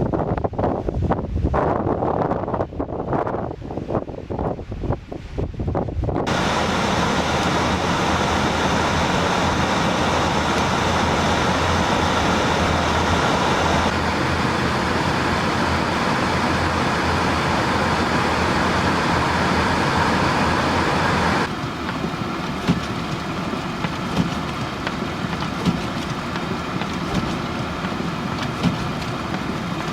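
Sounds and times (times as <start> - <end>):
blizzard wind: 0.0 - 29.9
road noise: 6.2 - 29.9
vehicle engine running: 6.3 - 29.9.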